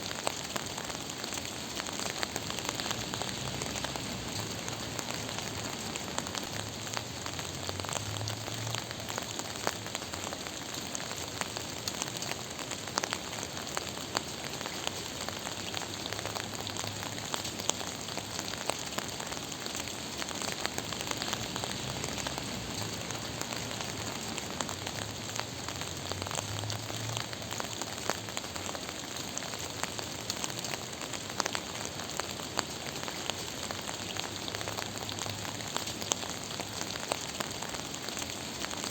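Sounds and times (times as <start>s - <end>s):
gentle rain pattering: 0.0s - 38.9s.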